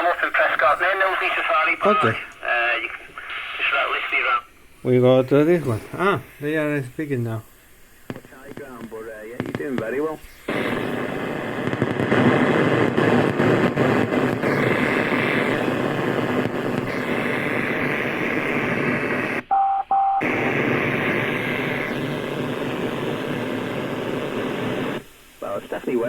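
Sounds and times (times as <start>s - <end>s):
hissy crackly radio static: 0.0s - 19.5s, 20.2s - 26.0s
short beep: 19.5s - 20.2s.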